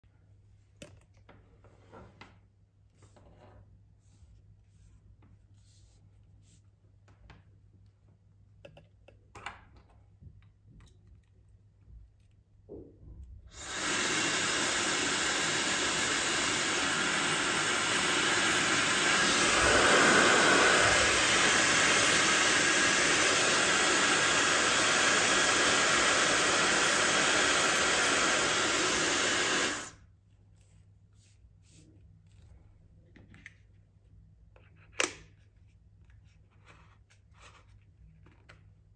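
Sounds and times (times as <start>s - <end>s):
hair dryer blowing air: 13.5s - 30.0s.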